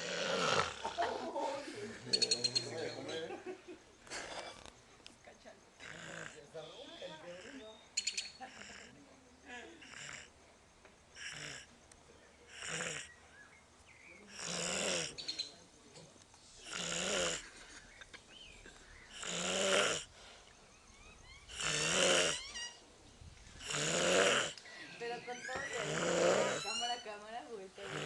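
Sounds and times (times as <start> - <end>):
child snoring: 0.0 - 0.9, 5.8 - 6.4, 11.2 - 11.7, 12.5 - 13.1, 14.3 - 15.2, 16.6 - 17.5, 19.1 - 20.1, 21.3 - 22.6, 23.6 - 24.6, 25.6 - 26.7, 27.8 - 28.0.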